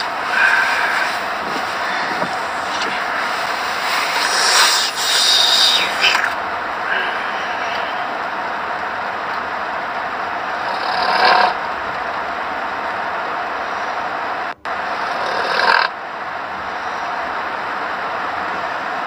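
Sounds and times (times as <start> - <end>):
person snoring: 0.0 - 8.3
steady hiss: 0.0 - 19.0.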